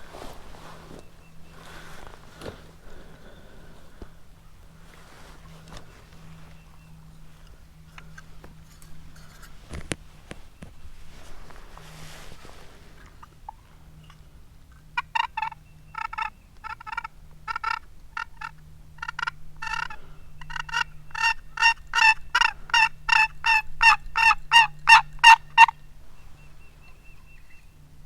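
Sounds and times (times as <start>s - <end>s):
turkey yelps: 15.0s - 25.8s.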